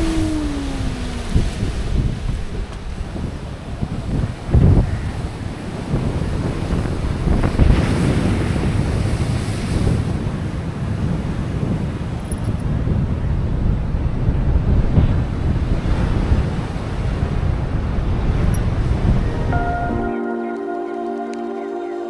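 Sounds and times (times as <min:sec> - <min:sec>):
sea waves breaking: 0:00.0 - 0:10.4
wind buffeting microphone: 0:00.0 - 0:19.5.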